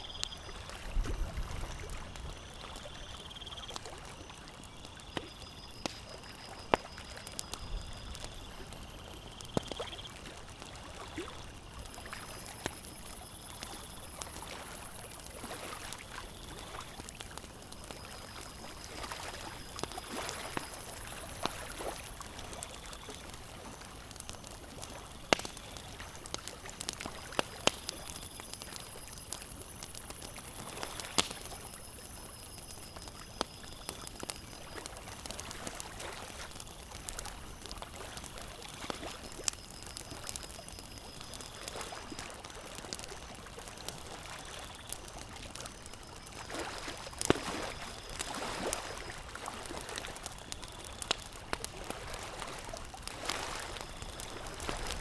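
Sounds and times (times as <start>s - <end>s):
campfire crackling and popping: 0.0s - 55.0s
lake water lapping: 14.4s - 23.8s, 46.3s - 55.0s.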